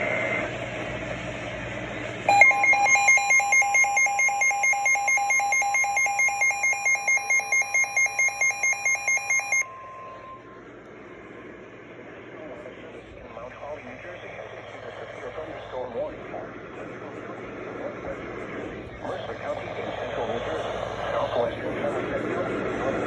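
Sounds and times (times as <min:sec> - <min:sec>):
loud beeping alarm: 0:02.3 - 0:10.6
steady warning alarm tone: 0:02.3 - 0:10.6.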